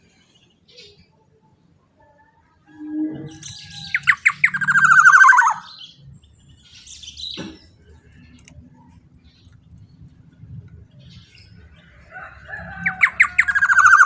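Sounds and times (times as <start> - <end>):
bird calling loudly: 3.4 - 5.8, 12.8 - 14.0.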